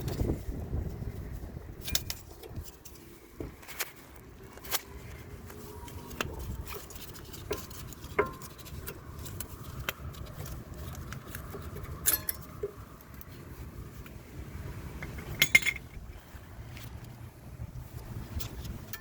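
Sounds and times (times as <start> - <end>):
metallic clicks and clinks: 6.6 - 13.2, 15.0 - 16.0, 18.4 - 19.0.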